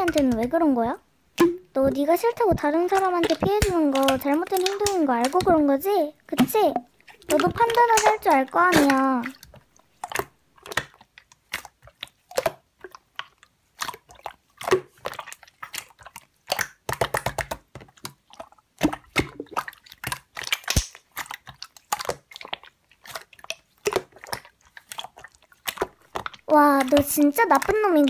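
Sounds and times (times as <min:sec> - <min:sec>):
slime squeezed by hand crackling: 0:02.7 - 0:09.5, 0:20.4 - 0:28.0.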